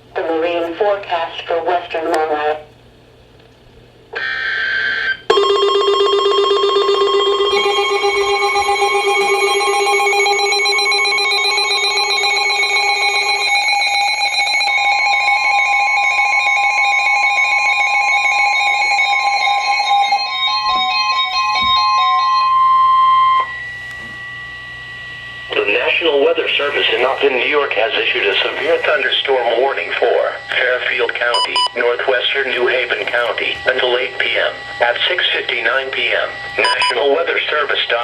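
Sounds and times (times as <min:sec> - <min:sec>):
steady high tone: 0:04.2 - 0:38.0
electronic data tones: 0:07.4 - 0:14.7, 0:24.4 - 0:37.3
layered electronic tones: 0:07.5 - 0:13.6.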